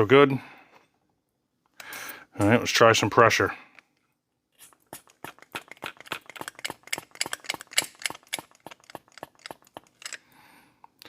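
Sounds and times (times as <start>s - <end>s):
hand pump clicking: 5.4s - 10.2s.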